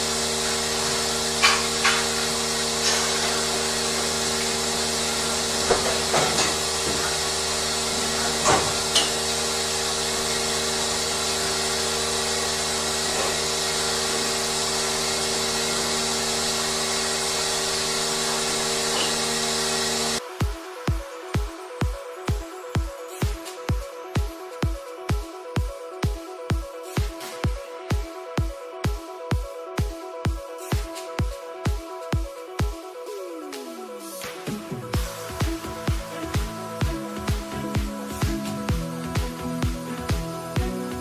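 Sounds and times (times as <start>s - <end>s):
barn machinery humming and hissing: 0.0s - 24.7s, 34.2s - 41.0s.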